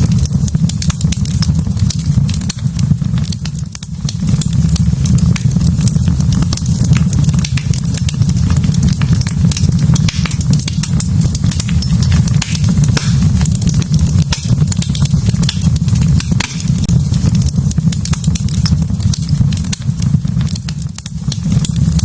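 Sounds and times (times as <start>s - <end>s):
burning logs crackling and popping: 0.0s - 22.0s
fire flames rumbling: 0.0s - 22.0s.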